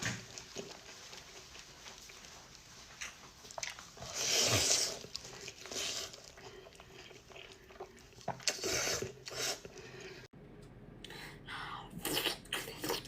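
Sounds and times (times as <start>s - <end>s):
wet chewing clicks: 0.2s - 9.6s.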